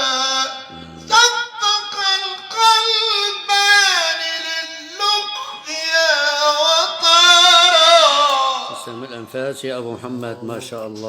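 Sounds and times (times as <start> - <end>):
high voice singing: 0.0 - 9.4.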